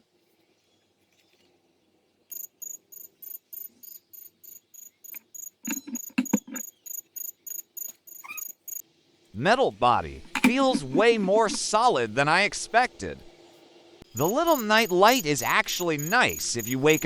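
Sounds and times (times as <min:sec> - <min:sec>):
high-pitched chirps: 0:05.1 - 0:08.8, 0:14.1 - 0:17.0.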